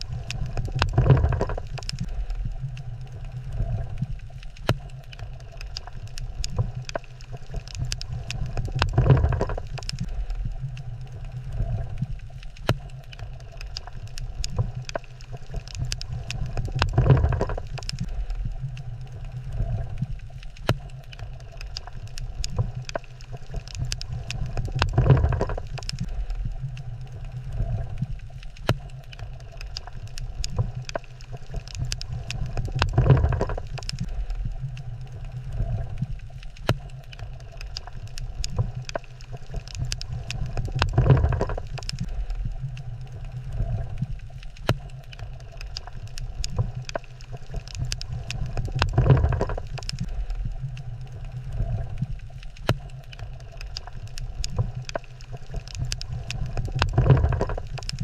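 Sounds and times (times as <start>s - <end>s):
crackle of sharp clicks: 0.0s - 58.0s
rumbling surge of water: 29.2s - 58.0s.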